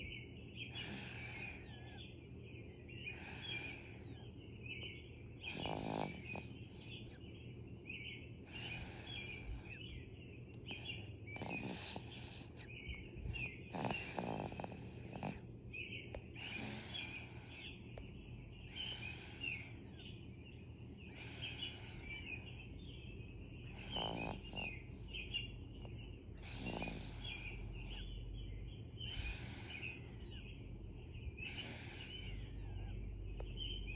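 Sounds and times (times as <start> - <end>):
slow snoring: 0.7 - 1.7, 5.4 - 7.0, 10.8 - 12.6, 13.4 - 15.4, 16.4 - 17.5, 23.7 - 25.4, 26.4 - 28.1, 31.4 - 32.6
high chirping: 21.1 - 33.9.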